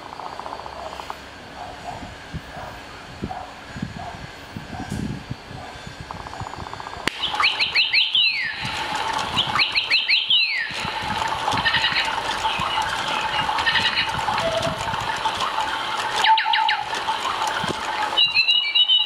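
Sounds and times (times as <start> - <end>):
steady hum and hiss: 0.0 - 19.0
electronic toy bird chirping: 6.2 - 19.0.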